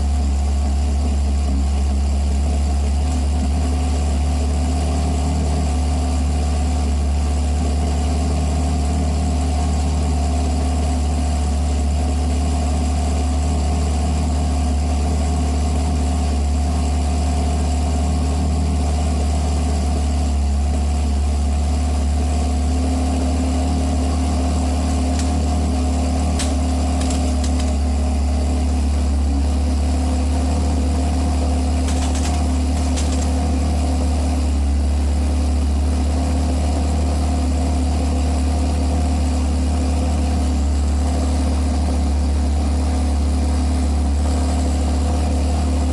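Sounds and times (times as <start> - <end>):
car engine idling: 0.0 - 45.9.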